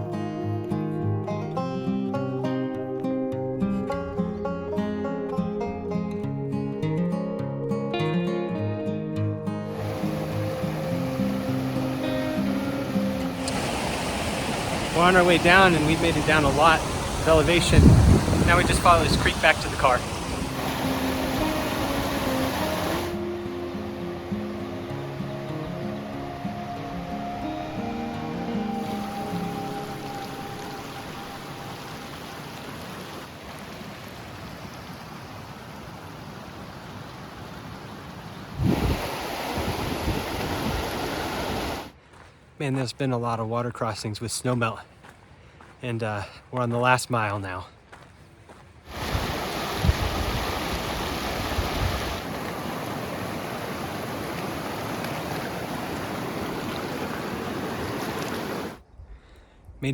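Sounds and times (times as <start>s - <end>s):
creek rushing: 9.7s - 42.0s, 48.9s - 58.8s.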